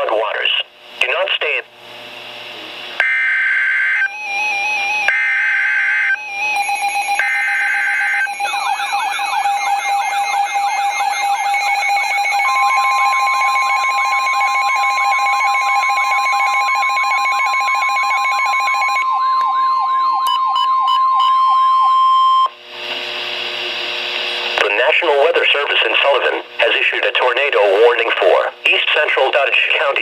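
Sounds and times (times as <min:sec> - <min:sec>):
steady warning alarm tone: 0:03.0 - 0:22.6
falling siren-like whoop: 0:18.4 - 0:22.5.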